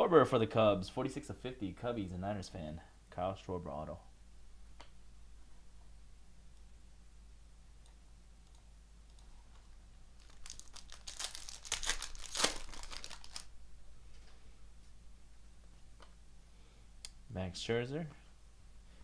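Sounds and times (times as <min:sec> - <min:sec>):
wrapper crinkling and tearing: 0:09.5 - 0:13.5.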